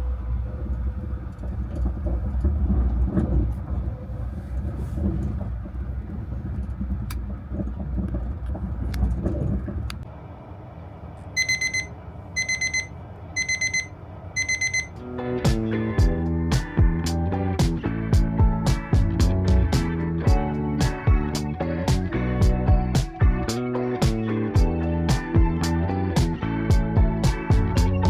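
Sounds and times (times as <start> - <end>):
train rumbling: 0.0 - 22.4
electronic alarm beeping: 11.4 - 15.0.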